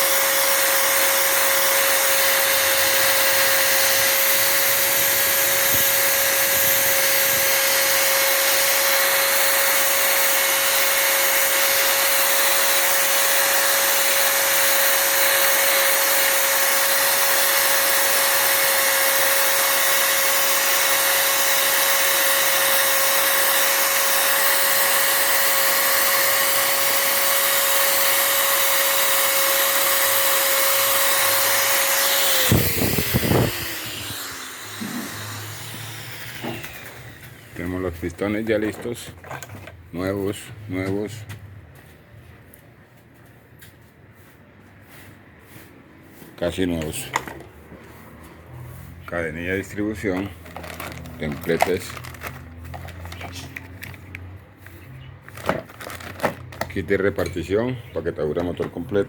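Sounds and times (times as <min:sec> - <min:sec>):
small electric fan motor whining: 0:00.0 - 0:37.8.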